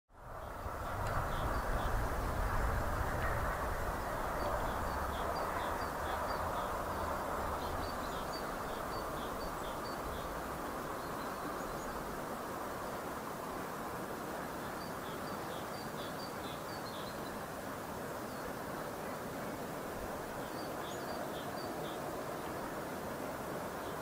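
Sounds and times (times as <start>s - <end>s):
locomotive low rumble: 0.1s - 11.3s
birds chirping: 4.0s - 12.1s.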